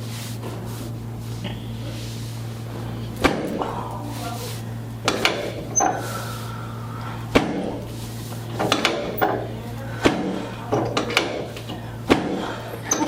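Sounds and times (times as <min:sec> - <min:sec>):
table sections clunking down: 0:05.0 - 0:06.1, 0:08.4 - 0:13.0.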